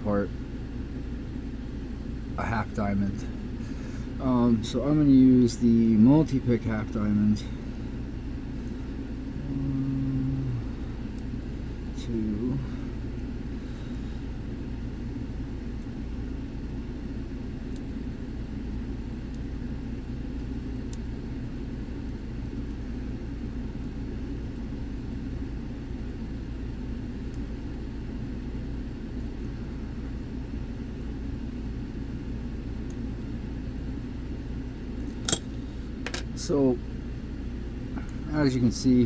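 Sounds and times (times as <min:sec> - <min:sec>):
low background rumble: 0:00.0 - 0:39.0
lock pick ticking: 0:35.0 - 0:35.6
lock clicking open: 0:35.2 - 0:35.5.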